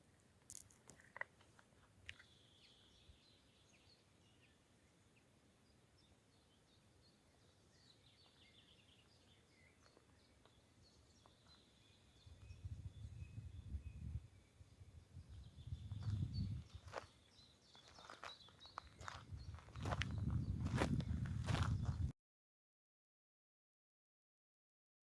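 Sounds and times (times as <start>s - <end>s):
faint bird chirps: 2.1s - 22.0s.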